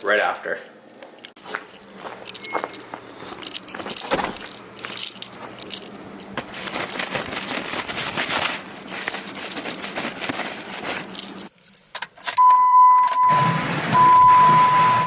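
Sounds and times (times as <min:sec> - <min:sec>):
keys jangling: 0:02.2 - 0:06.3, 0:11.0 - 0:12.4
high electronic beep: 0:12.4 - 0:15.0.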